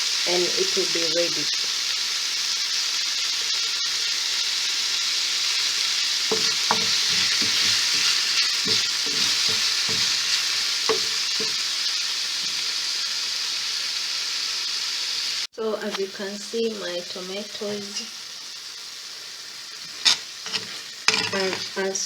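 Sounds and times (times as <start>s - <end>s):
vegetables sizzling in a frying pan: 0.0s - 22.0s
spoon scraping a pan: 6.3s - 11.7s, 19.8s - 21.9s.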